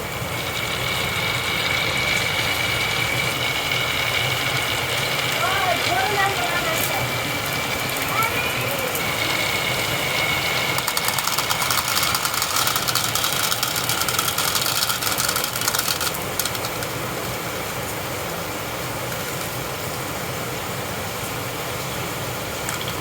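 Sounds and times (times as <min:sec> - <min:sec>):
steady hiss: 0:00.0 - 0:23.0
marbles rolling and clattering: 0:00.2 - 0:17.4.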